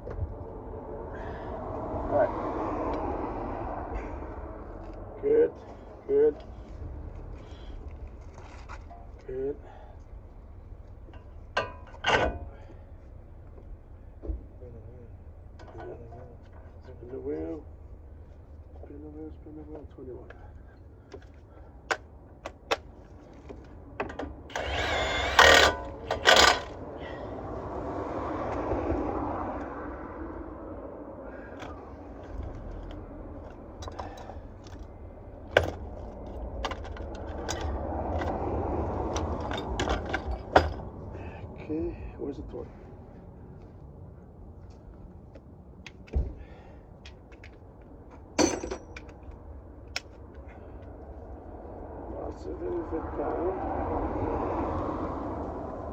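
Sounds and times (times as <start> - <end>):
starter cranking with whine: 24.5 - 26.8.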